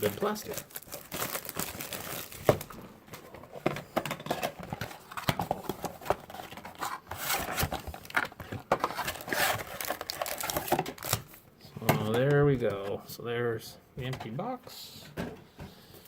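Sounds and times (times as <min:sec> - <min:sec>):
foil packs crinkling: 0:00.0 - 0:02.8, 0:04.2 - 0:11.4.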